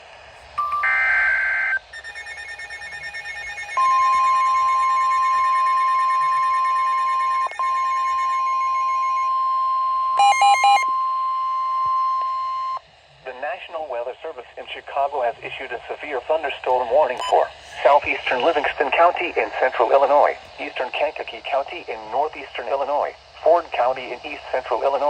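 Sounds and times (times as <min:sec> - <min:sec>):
pulsing beeps: 0:00.6 - 0:12.8, 0:17.2 - 0:19.9
short electronic beeps: 0:00.6 - 0:12.8, 0:17.2 - 0:17.4
weather radio alarm tone: 0:00.6 - 0:12.8, 0:16.7 - 0:21.1.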